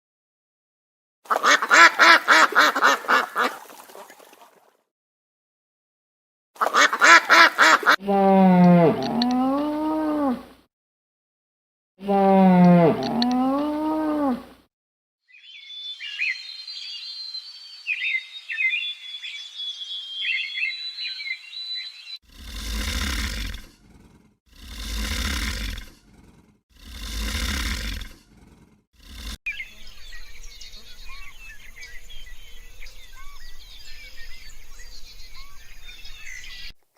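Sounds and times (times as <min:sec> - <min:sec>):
high twittering chirps: 0:15.3 - 0:22.2.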